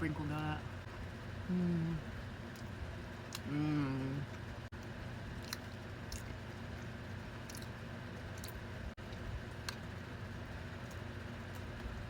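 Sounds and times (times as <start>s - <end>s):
steady room hum: 0.0s - 12.0s
person chewing: 2.5s - 10.0s.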